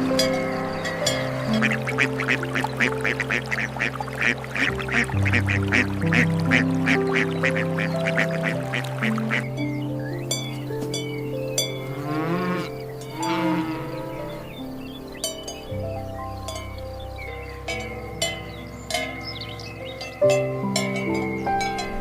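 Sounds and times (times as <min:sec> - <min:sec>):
ducks quacking: 0:00.0 - 0:10.3
soft background music: 0:00.0 - 0:22.0.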